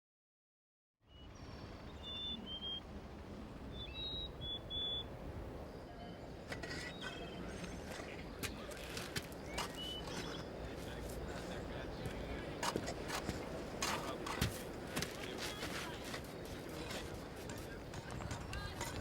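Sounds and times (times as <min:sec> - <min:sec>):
small birds chirping: 0:01.0 - 0:19.0.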